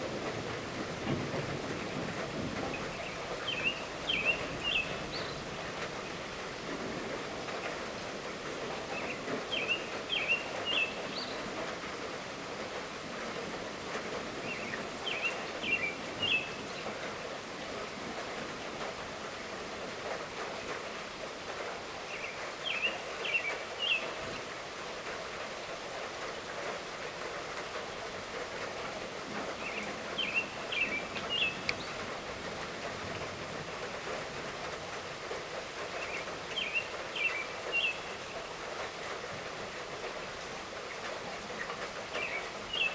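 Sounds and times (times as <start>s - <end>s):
light rainfall: 0.0s - 42.9s
bird chirping song: 2.7s - 5.5s, 9.0s - 11.4s, 14.5s - 16.8s, 22.1s - 24.3s, 29.6s - 32.0s, 36.0s - 38.4s, 41.6s - 42.9s.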